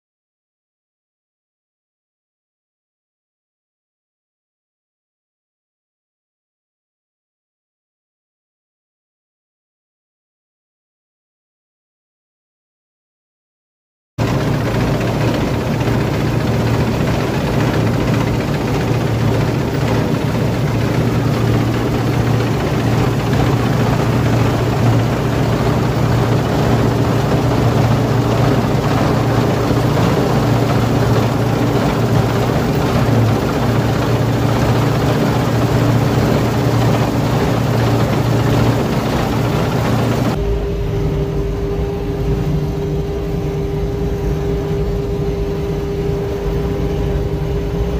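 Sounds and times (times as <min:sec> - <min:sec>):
threshing machinery rushing: 0:14.2 - 0:40.4
diesel drone: 0:14.2 - 0:47.9
low rumble with hum: 0:14.2 - 0:47.9.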